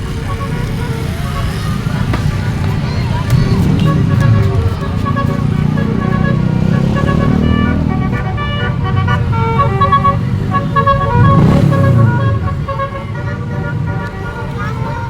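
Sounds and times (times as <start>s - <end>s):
bus engine rumble: 0.0s - 15.0s
bus horn tooting tune: 0.0s - 15.0s.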